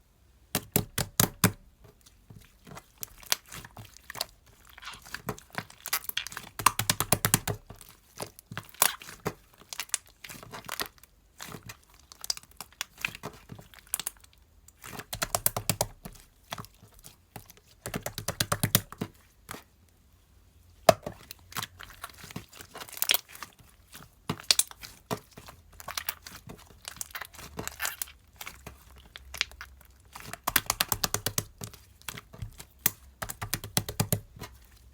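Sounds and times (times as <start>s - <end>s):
crinkling: 1.8s - 15.1s, 21.1s - 34.9s
rapid sharp clicks and taps: 6.6s - 7.6s, 15.1s - 16.0s, 17.9s - 19.0s, 30.4s - 31.7s, 32.4s - 34.4s.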